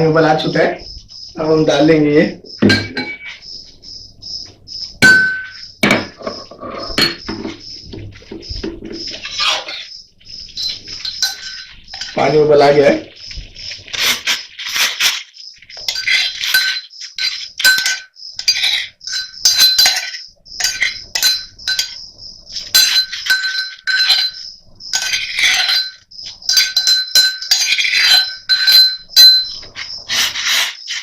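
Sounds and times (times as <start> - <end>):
metal spoon scraping steel pot: 5.3 - 7.6, 8.8 - 13.2, 13.9 - 31.0.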